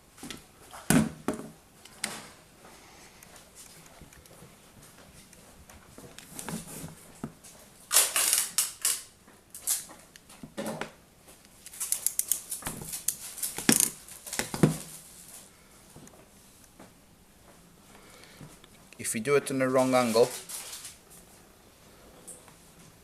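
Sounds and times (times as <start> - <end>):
small parts clicking and rattling: 7.9 - 10.2, 11.5 - 14.5.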